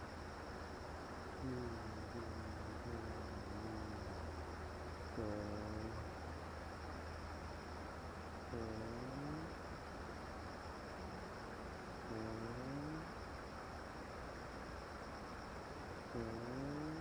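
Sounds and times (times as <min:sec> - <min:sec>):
low hum: 0:00.0 - 0:13.6
crickets chirring: 0:00.0 - 0:17.0.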